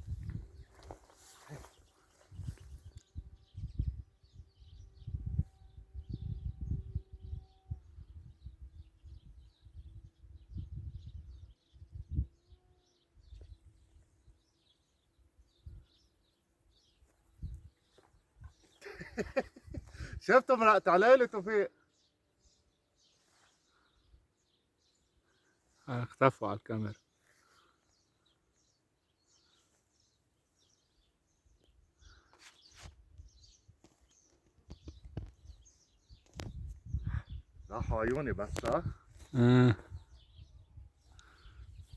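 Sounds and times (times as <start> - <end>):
wind buffeting microphone: 0.0 - 0.9, 2.3 - 12.4, 34.7 - 39.2
small birds chirping: 0.0 - 41.9.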